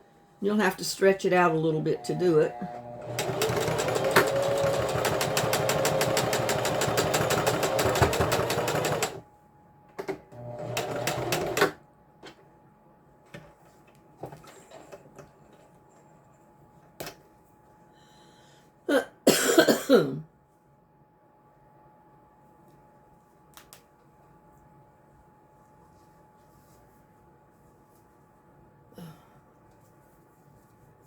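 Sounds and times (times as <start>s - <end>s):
sewing machine stitching: 1.9s - 9.2s, 10.3s - 11.8s.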